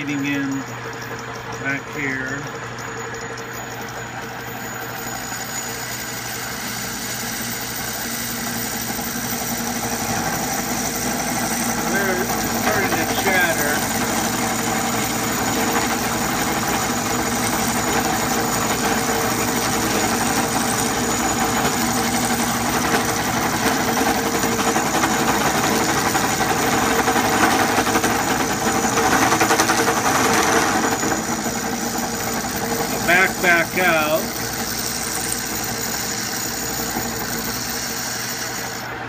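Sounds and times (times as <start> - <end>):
metal lathe running: 0.0 - 39.0
cutting tool chattering: 8.5 - 38.7.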